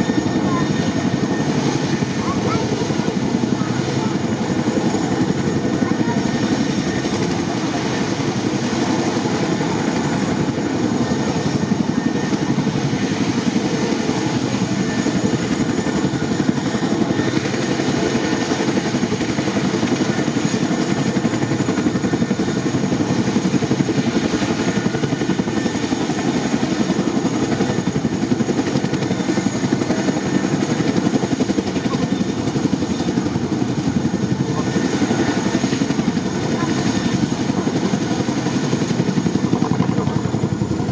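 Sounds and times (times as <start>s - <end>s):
helicopter rotor beat: 0.0s - 40.9s.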